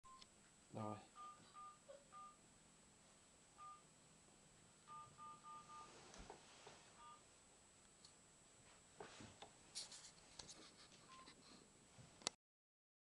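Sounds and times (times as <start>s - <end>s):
touch-tone keypad beeps: 1.2s - 2.4s, 3.6s - 3.8s, 4.9s - 5.9s, 7.0s - 7.2s.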